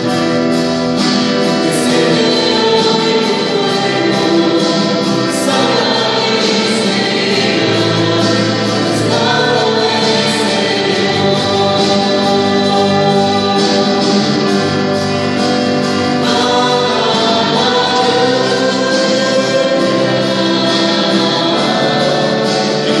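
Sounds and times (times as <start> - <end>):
choir singing worship song: 0.0 - 23.0
loud musical backing: 0.0 - 23.0.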